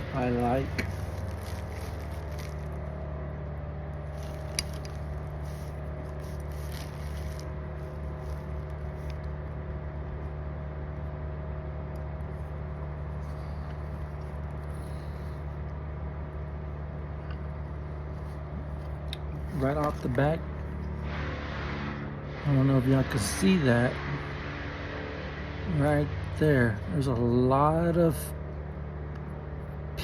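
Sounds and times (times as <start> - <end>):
parts being handled: 0.0 - 9.5, 17.3 - 21.2
low mechanical hum: 0.0 - 30.0.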